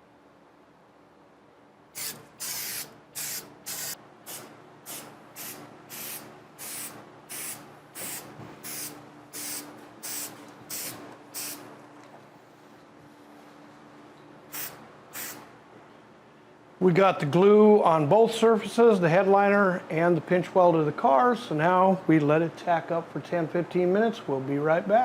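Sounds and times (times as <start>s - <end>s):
aerosol spray hissing: 2.0s - 11.6s, 14.5s - 15.4s.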